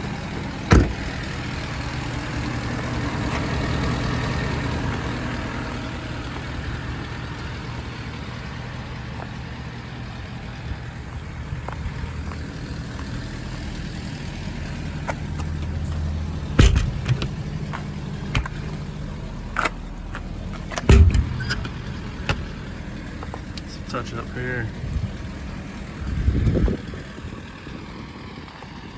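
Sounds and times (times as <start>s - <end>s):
diesel truck engine idling: 0.0s - 28.9s
sharp knocks: 16.6s - 17.4s, 20.7s - 23.5s.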